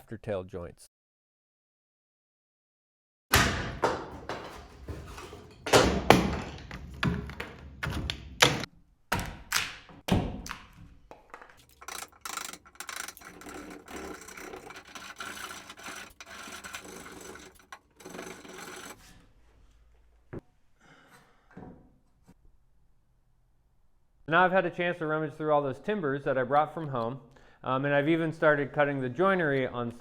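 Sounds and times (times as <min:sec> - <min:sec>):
quick rasping strokes on wood: 0:12.8 - 0:19.1.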